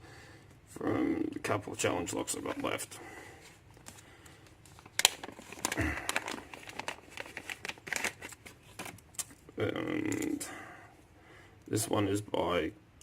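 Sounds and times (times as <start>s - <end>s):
locks rustling and crinkling: 4.6s - 9.4s.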